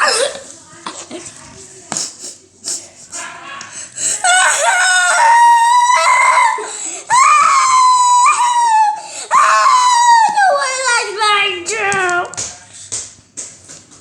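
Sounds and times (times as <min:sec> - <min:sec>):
child crying loudly: 0:04.2 - 0:12.3.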